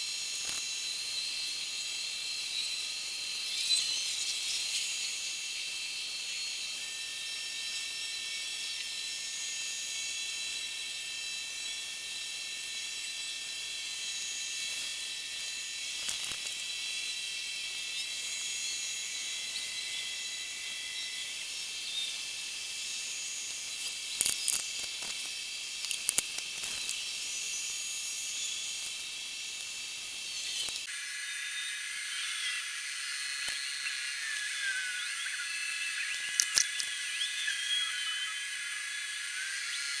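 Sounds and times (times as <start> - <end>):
acid fizzing: 32.4 - 37.8
sharp clicks: 36.0 - 37.0.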